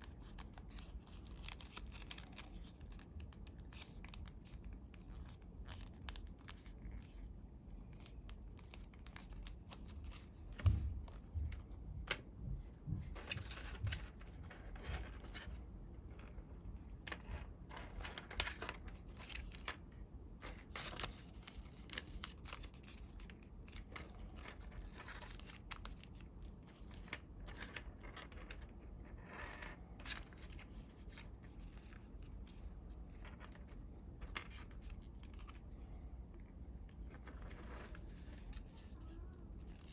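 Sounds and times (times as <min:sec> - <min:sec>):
paper rustling and crinkling: 0:00.0 - 0:39.9.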